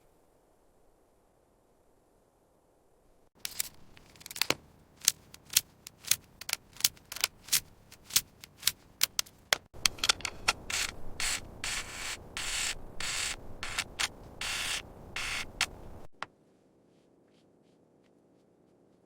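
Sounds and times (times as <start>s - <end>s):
sharp clicks: 3.4s - 15.8s.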